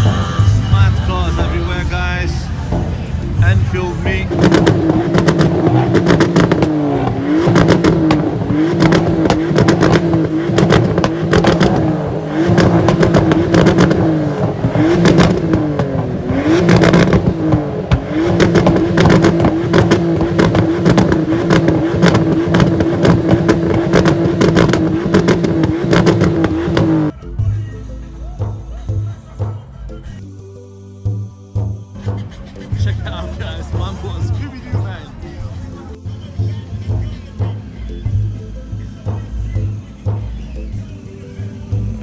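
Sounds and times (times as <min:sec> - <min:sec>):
car engine at high revs: 0:00.8 - 0:27.1
exhaust crackling pops: 0:02.5 - 0:27.1.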